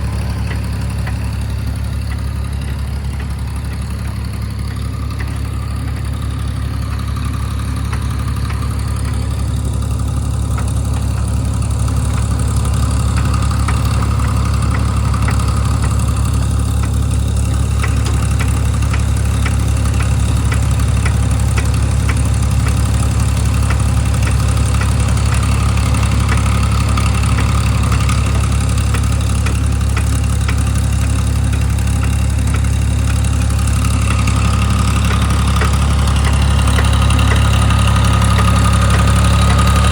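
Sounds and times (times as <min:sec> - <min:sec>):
diesel engine droning: 0:00.0 - 0:39.9.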